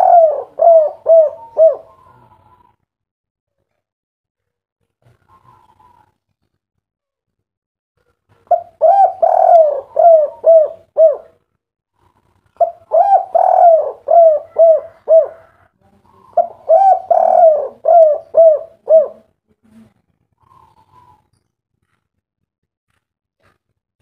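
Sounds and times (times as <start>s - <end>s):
dove cooing: 0.0s - 2.8s, 5.2s - 6.1s, 8.3s - 11.4s, 12.0s - 19.3s, 20.4s - 21.3s.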